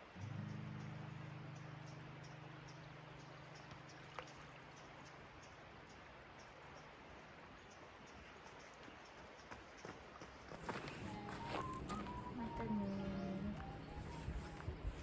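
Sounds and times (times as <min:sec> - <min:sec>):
low music chord: 0:11.0 - 0:15.0.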